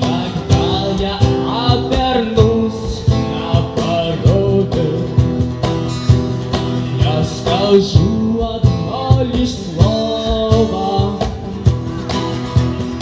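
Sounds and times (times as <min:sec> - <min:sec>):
guitar melody: 0:00.0 - 0:13.0
steady beat: 0:00.0 - 0:13.0.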